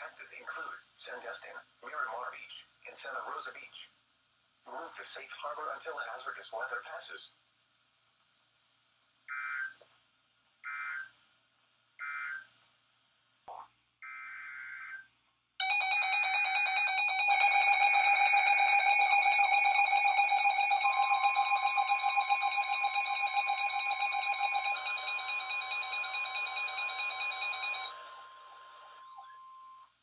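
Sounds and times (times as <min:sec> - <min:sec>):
steady pure warning tone: 0:15.6 - 0:28.0
rapidly pulsing buzzy alarm: 0:15.6 - 0:29.2.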